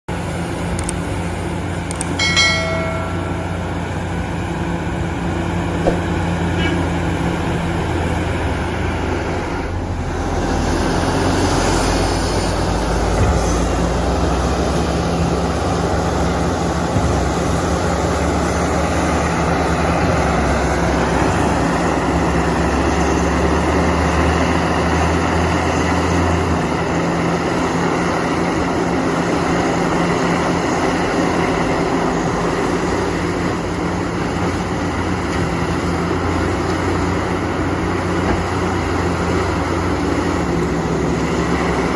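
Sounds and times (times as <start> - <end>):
excavator diesel engine: 0.1 - 41.9.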